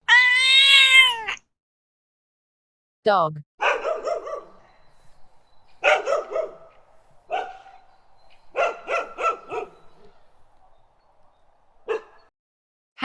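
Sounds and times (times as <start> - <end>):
dog barking: 3.6 - 4.9, 5.8 - 7.9, 8.5 - 10.9, 11.8 - 12.3.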